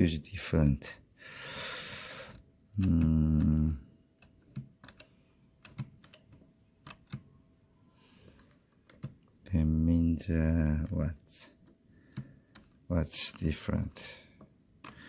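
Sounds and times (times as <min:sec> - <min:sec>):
person humming: 0:02.8 - 0:03.8
typewriter mechanism clicking: 0:02.8 - 0:07.3.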